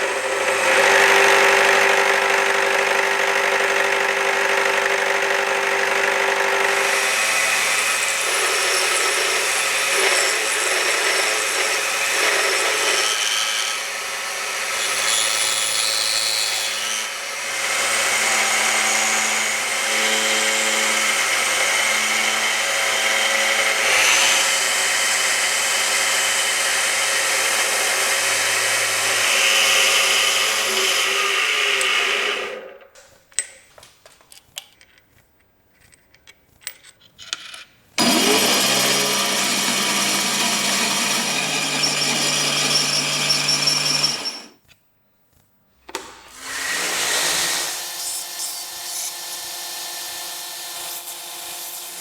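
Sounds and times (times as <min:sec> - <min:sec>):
machine tool running: 0:38.0 - 0:44.6.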